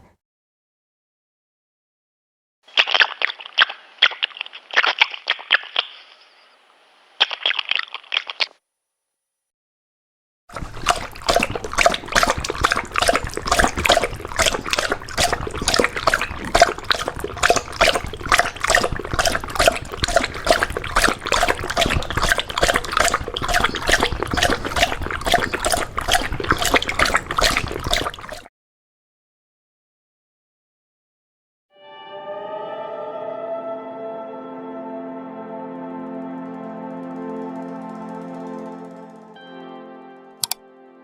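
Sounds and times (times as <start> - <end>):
dog lapping water: 2.7 - 6.2, 7.2 - 8.5, 10.5 - 28.5.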